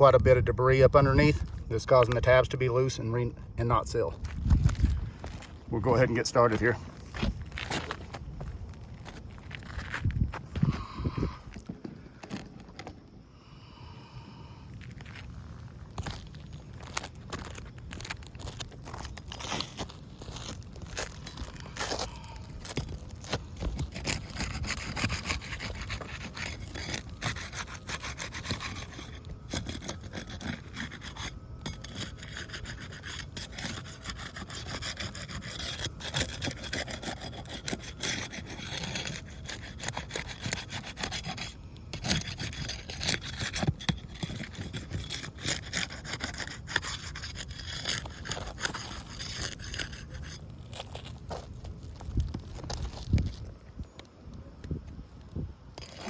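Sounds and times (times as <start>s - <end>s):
scraping roof shingles: 16.0s - 31.1s.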